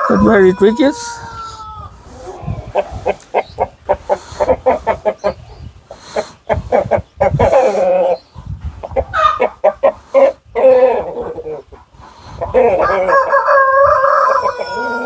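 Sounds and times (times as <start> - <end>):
chicken drawn-out call: 0.0 - 5.4, 9.0 - 15.0
chickens clucking: 0.0 - 15.0.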